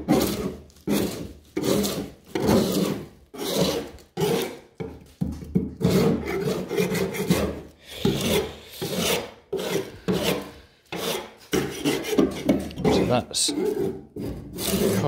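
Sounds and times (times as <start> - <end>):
paint scraping off metal: 5.8 - 15.0.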